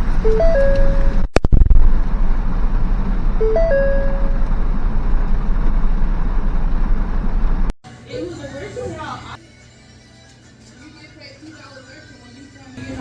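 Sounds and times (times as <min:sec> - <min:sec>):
steady low rumble: 0:00.0 - 0:07.7
three-note electronic chime: 0:00.3 - 0:01.2, 0:03.4 - 0:04.4.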